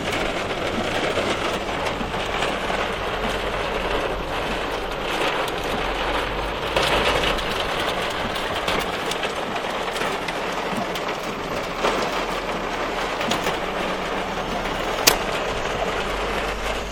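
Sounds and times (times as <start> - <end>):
heavy rain pouring: 0.0 - 16.9
sharp click: 15.0 - 15.3.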